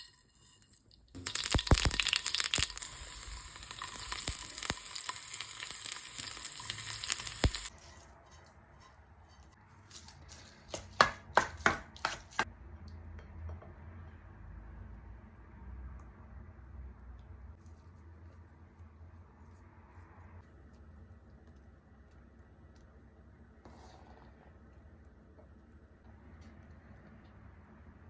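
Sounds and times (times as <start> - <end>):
oil sizzling in a pan: 0.0 - 7.7.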